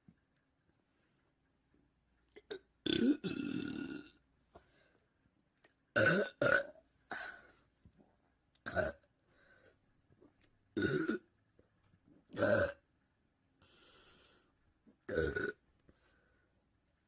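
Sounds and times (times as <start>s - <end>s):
person burping: 2.3s - 4.2s, 6.0s - 7.4s, 8.6s - 9.1s, 10.8s - 11.3s, 12.3s - 12.9s, 15.1s - 15.6s.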